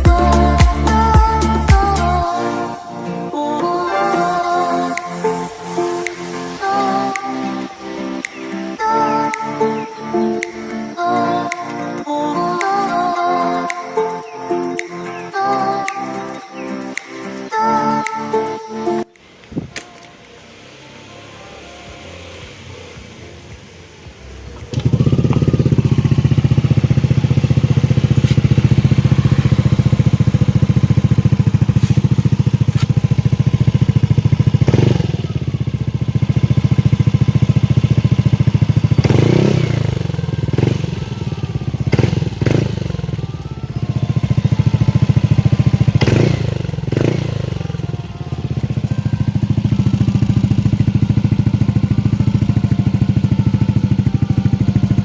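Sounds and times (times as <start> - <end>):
motorcycle engine idling and revving: 0.0 - 2.3, 19.3 - 55.0.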